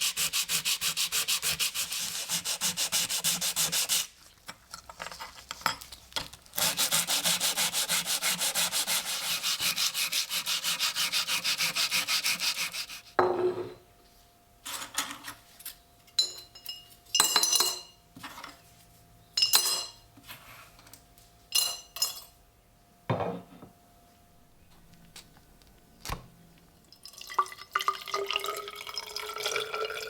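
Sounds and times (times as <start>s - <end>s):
hand sanding strokes: 0.0s - 4.2s, 6.6s - 13.2s.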